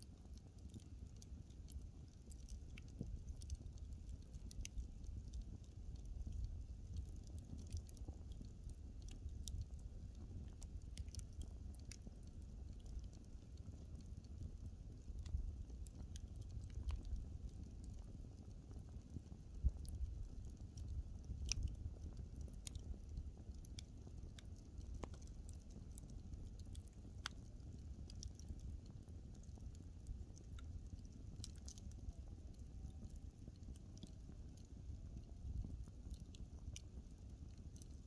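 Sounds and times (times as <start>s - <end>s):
burning wood crackling and popping: 0.0s - 38.0s
wood fire rumbling: 0.1s - 38.0s.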